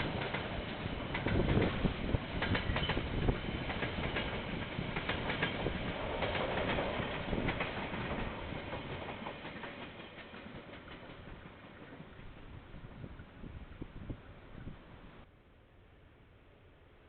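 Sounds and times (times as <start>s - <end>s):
train wheels clattering on rails: 0.0s - 12.3s.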